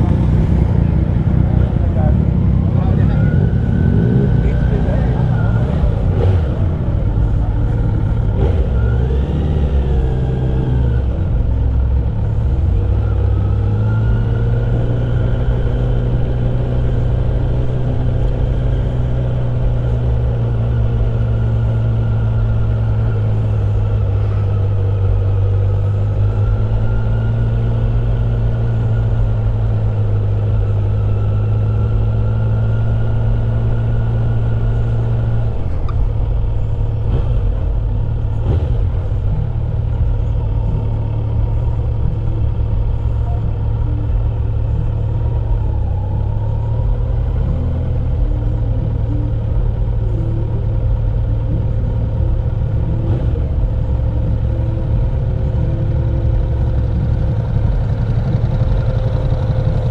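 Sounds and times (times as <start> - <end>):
motorcycle engine running: 0.0 - 59.9.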